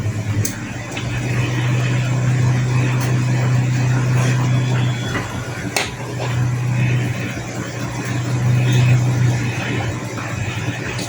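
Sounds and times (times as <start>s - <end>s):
low machine hum: 0.0s - 11.0s.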